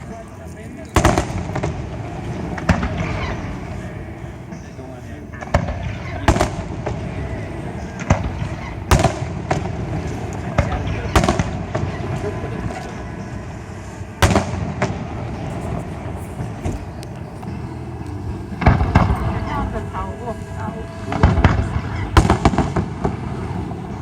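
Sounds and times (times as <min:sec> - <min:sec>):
low rumble: 0:00.0 - 0:24.0
fireworks bangs: 0:01.0 - 0:13.6, 0:14.2 - 0:24.0.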